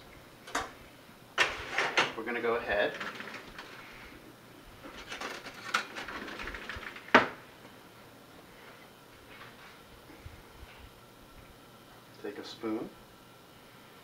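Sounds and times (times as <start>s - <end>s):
kitchen utensils scraping and clicking: 4.8s - 7.0s.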